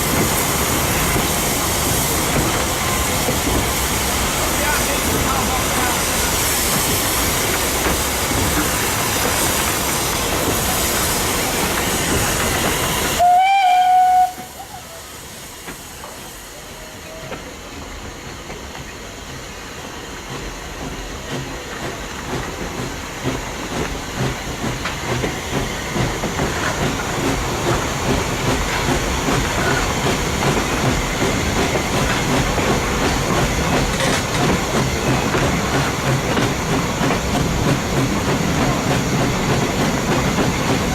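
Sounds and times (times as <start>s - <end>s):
steam train hissing: 0.0s - 40.9s
train carriages rumbling on rails: 0.0s - 40.9s
steam whistle blast: 13.2s - 15.0s.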